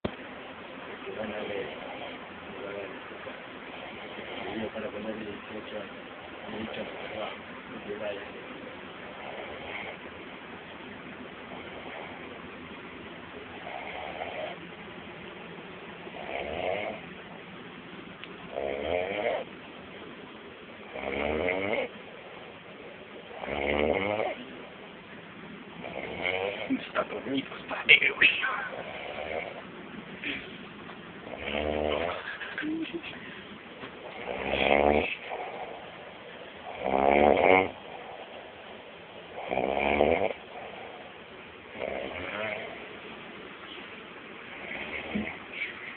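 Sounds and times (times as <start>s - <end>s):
person snoring: 25.8s - 26.8s, 31.3s - 33.1s, 34.0s - 35.8s, 36.6s - 38.4s, 39.4s - 41.0s, 41.8s - 42.8s, 44.6s - 45.9s.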